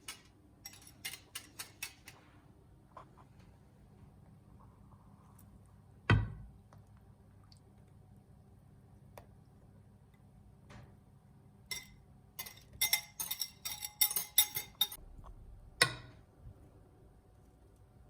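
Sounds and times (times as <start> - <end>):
metal utensil clinking on bowl: 0.0 - 2.2, 11.7 - 15.0.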